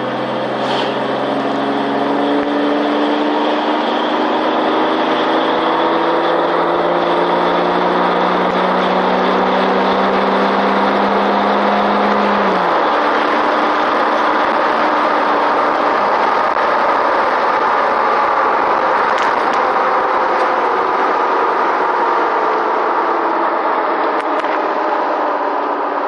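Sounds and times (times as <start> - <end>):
car engine and road noise: 0.0 - 26.0.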